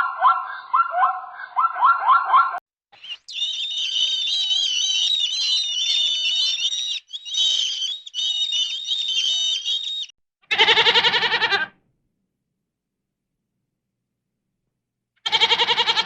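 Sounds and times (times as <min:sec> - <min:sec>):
high-pitched chirping and warbling: 0:00.0 - 0:10.1
loud quavering bleat: 0:10.5 - 0:11.8, 0:15.2 - 0:16.0.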